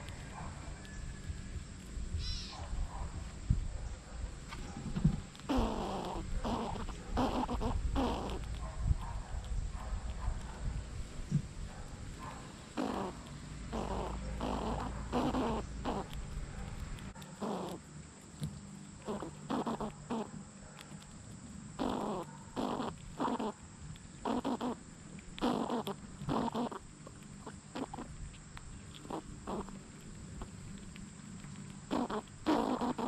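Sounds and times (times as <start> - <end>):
squirrel calling: 0.0 - 2.8, 3.9 - 11.4, 12.0 - 30.7, 31.6 - 33.0.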